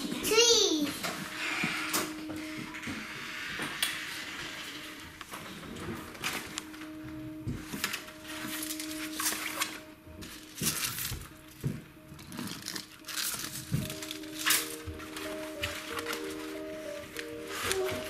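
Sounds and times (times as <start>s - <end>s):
faint background music: 0.0s - 18.0s
plant leaves rustling and clicking: 12.3s - 18.0s.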